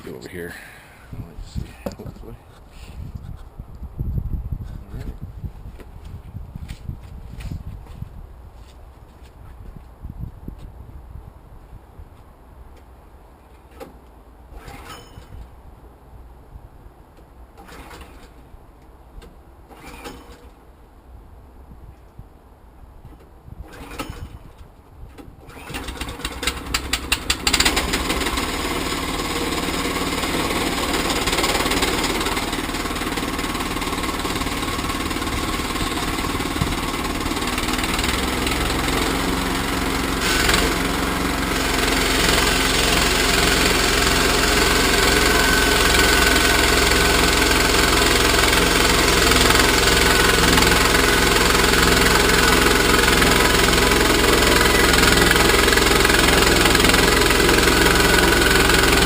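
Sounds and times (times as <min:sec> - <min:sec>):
pull starter cranking: 0:14.5 - 0:15.4, 0:17.6 - 0:18.4, 0:19.7 - 0:20.6, 0:23.7 - 0:24.5, 0:25.4 - 0:59.0
small gasoline engine running: 0:17.6 - 0:18.3, 0:23.6 - 0:24.4, 0:25.4 - 0:59.0.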